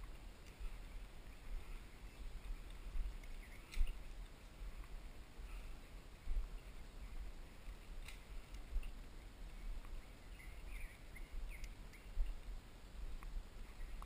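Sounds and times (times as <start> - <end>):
bird chirps: 3.2 - 4.1, 9.9 - 12.3.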